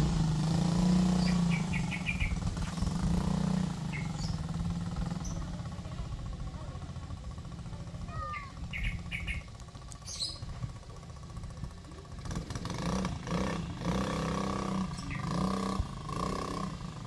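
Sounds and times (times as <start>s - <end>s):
small engine running: 0.0s - 17.0s
birds chirping: 1.0s - 5.8s, 7.4s - 11.1s, 14.8s - 15.8s.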